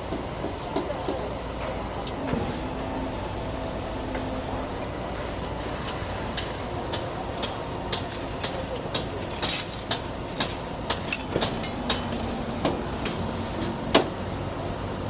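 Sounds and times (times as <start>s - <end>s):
engine running: 0.0s - 15.0s
metallic knocks and scrapes: 2.3s - 14.3s.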